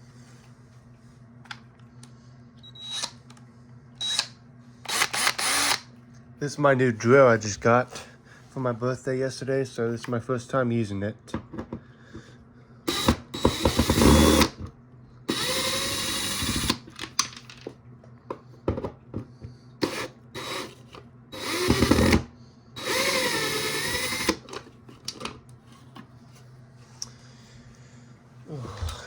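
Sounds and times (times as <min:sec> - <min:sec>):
power drill motor whirring: 0:02.7 - 0:03.2, 0:04.0 - 0:05.9, 0:12.9 - 0:14.6, 0:15.3 - 0:16.9, 0:19.8 - 0:24.6
drill clicks: 0:04.9 - 0:05.9, 0:12.9 - 0:14.6, 0:15.3 - 0:16.8, 0:19.8 - 0:20.8, 0:21.4 - 0:22.2, 0:22.8 - 0:25.2.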